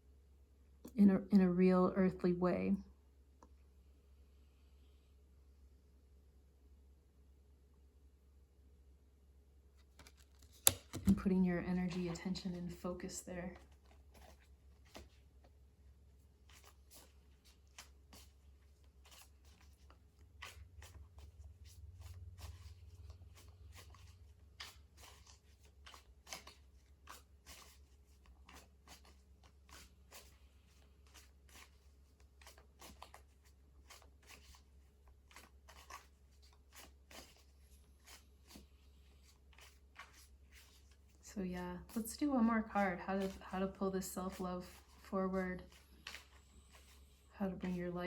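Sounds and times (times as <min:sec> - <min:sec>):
cards clicking and rustling: 0:09.8 - 0:11.2, 0:13.6 - 0:15.5, 0:22.0 - 0:41.0, 0:44.3 - 0:47.0.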